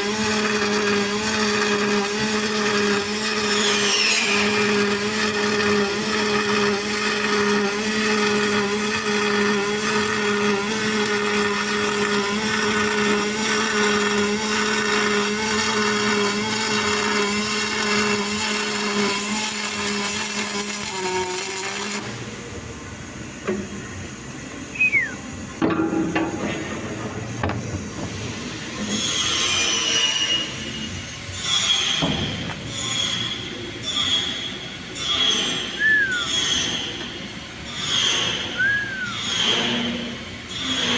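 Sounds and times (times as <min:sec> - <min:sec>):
welding arc buzzing hiss: 0:00.0 - 0:40.9
short high squeaks: 0:03.4 - 0:05.0, 0:28.8 - 0:32.0, 0:32.7 - 0:37.1, 0:37.7 - 0:40.7.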